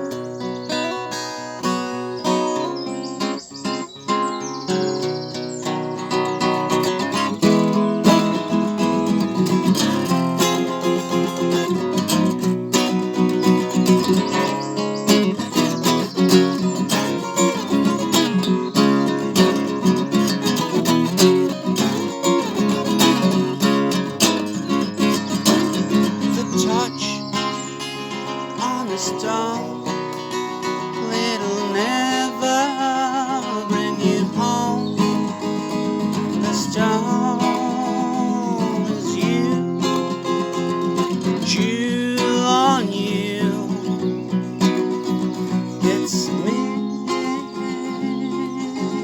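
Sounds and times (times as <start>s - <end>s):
acoustic guitar playing: 0.0s - 49.0s.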